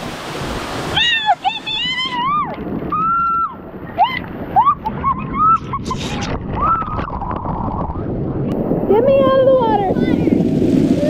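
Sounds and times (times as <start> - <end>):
water rushing: 0.0 - 11.0
high-pitched squeals and yelps: 1.0 - 7.0.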